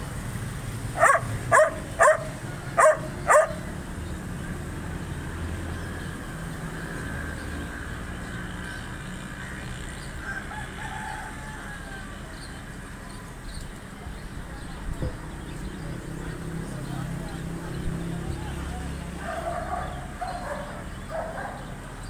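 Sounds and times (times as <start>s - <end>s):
dog barking: 1.0s - 3.8s, 19.2s - 21.8s.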